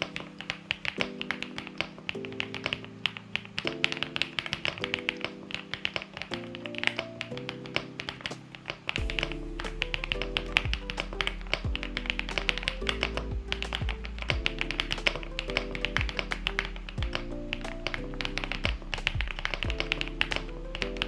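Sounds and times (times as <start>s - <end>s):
background music with deep beat: 9.0s - 21.0s.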